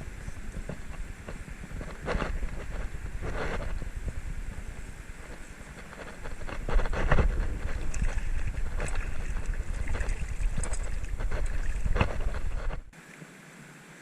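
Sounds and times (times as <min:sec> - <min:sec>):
sharp crackles: 0:00.0 - 0:12.9
wind buffeting microphone: 0:00.0 - 0:13.0.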